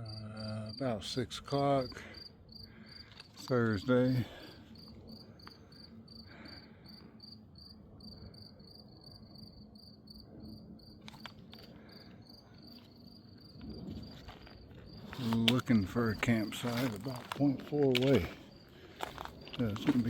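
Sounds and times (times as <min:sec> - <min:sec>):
cricket chirping: 0:00.0 - 0:20.0.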